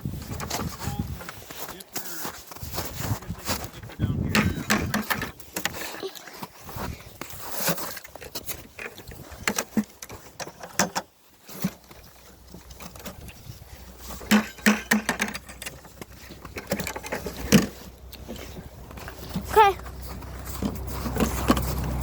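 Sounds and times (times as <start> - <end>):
footsteps on snowy ice: 0.2 - 4.0, 16.0 - 22.0
fishing gear knocking: 14.2 - 18.2.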